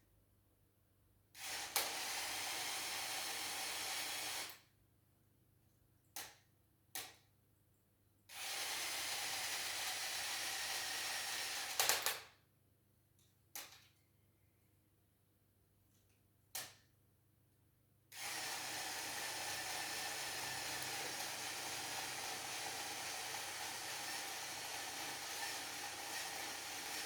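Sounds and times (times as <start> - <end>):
toy gear mechanism whirring: 18.2 - 27.0.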